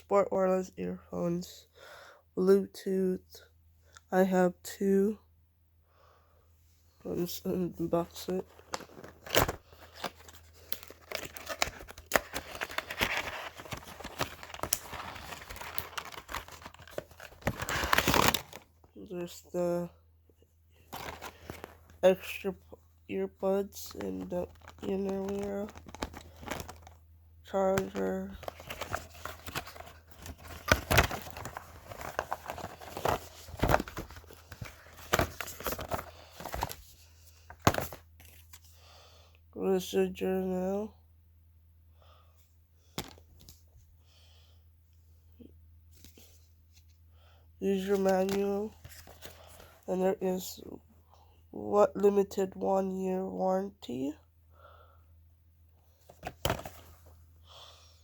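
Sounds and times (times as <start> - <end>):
packaging crinkling and tearing: 8.5 - 18.8, 20.9 - 22.0, 24.2 - 27.0, 27.7 - 36.9
packaging clicking and snapping: 8.6 - 18.6, 24.5 - 27.0, 27.8 - 36.7.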